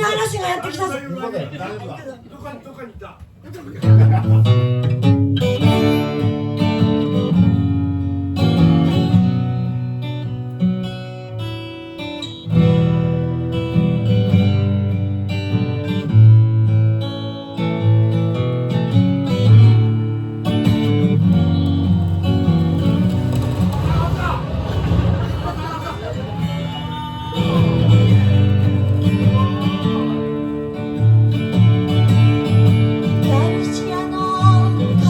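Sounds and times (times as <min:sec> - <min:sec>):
acoustic guitar strumming: 0:03.8 - 0:35.0.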